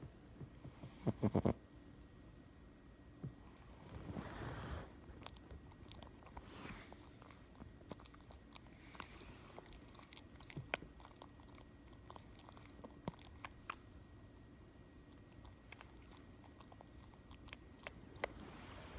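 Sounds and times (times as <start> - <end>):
faint snoring breaths: 3.4 - 5.0
puppy grinding teeth: 5.1 - 13.9, 15.1 - 18.4.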